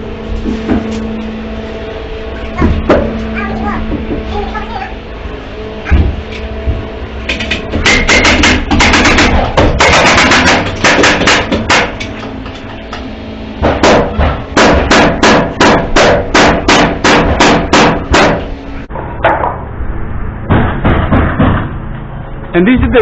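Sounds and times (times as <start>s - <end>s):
hammer driving nails into wood: 7.4s - 12.2s.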